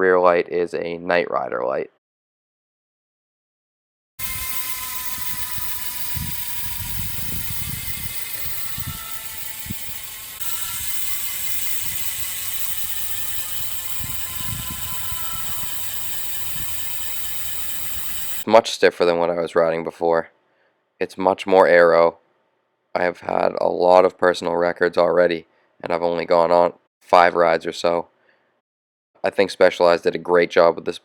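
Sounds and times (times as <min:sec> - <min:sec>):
bicycle freehub ratcheting buzz: 0:04.2 - 0:18.5.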